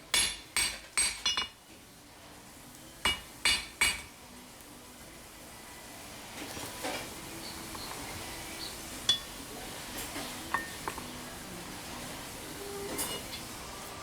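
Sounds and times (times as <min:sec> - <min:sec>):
steel tools scraping: 0:12.9 - 0:13.5.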